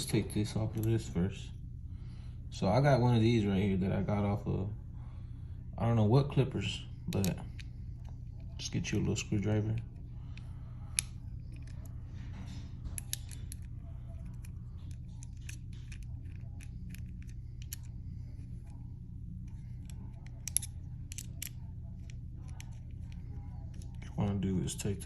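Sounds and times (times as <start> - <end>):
steady low hum: 0.0 - 25.0
small metal clicks: 19.8 - 22.8.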